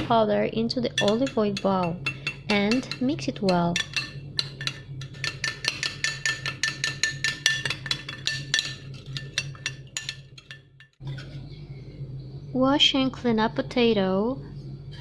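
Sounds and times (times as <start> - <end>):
utensil clinking against bowl: 1.0 - 11.3.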